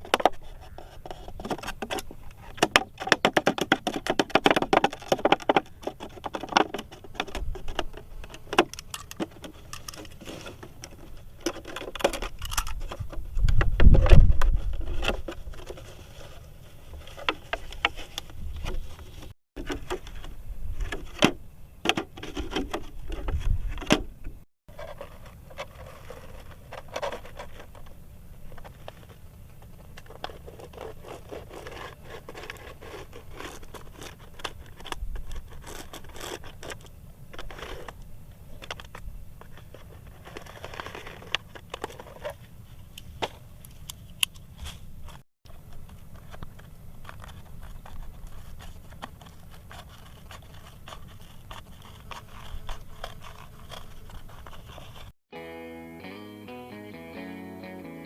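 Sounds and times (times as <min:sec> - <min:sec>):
scraping and scratching: 0:00.0 - 0:55.2.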